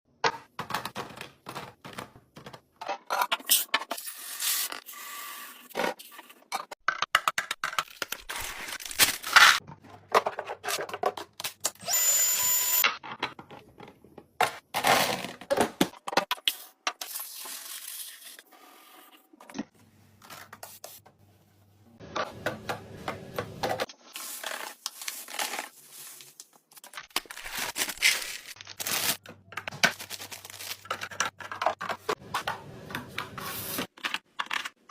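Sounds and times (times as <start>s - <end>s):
plastic packaging rustling: 24.2s - 31.2s
containers clicking and knocking: 30.6s - 33.3s.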